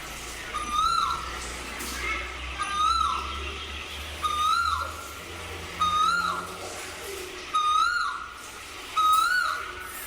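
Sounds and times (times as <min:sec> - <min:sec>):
cuckoo call: 0:00.5 - 0:03.4, 0:04.2 - 0:06.7, 0:07.5 - 0:10.0.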